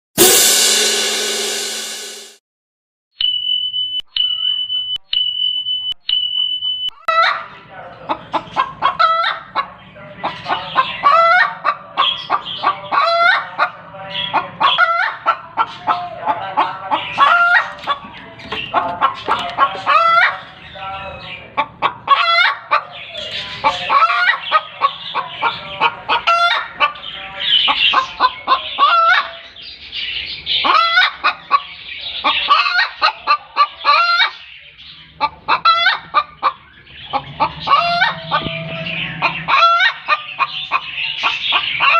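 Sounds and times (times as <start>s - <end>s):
hen cackling: 7.1s - 20.6s, 21.4s - 29.5s, 30.6s - 34.4s, 35.1s - 41.9s.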